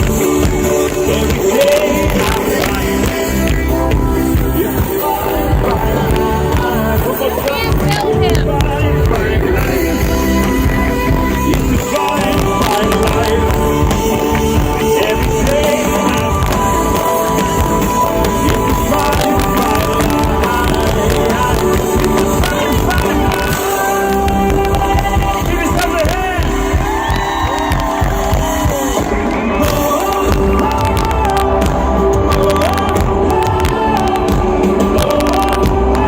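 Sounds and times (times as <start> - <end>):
crowd cheering and singing along: 0.0 - 36.0
drums: 0.0 - 36.0
live pop-rock band playing: 0.0 - 36.0.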